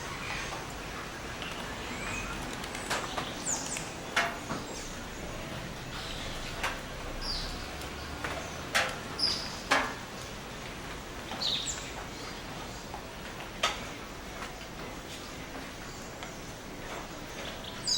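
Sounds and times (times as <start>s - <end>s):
steady background hiss: 0.0s - 17.9s
birds giving falling whistled calls: 8.3s - 9.8s.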